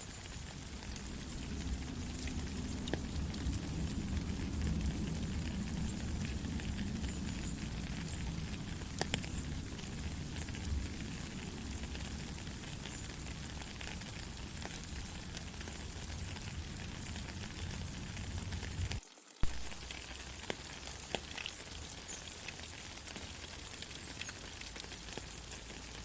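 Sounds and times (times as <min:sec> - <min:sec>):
steady rain hissing: 0:00.0 - 0:26.0
low rumble: 0:00.2 - 0:19.9.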